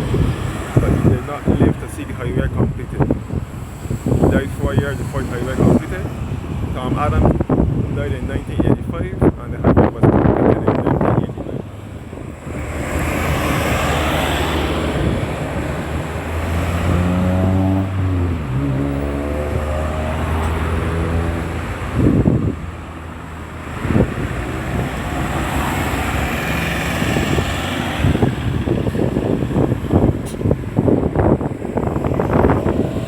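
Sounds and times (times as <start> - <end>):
cars whooshing past: 0.0 - 2.5, 9.8 - 33.0
wind buffeting microphone: 0.0 - 33.0
vehicle engine pulling away: 11.1 - 33.0.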